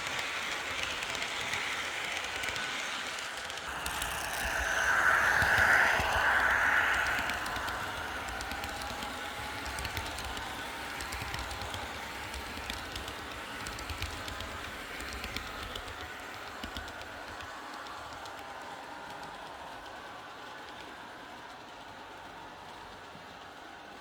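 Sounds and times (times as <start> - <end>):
model train clicking over rail joints: 0.0 - 3.7, 8.4 - 19.3.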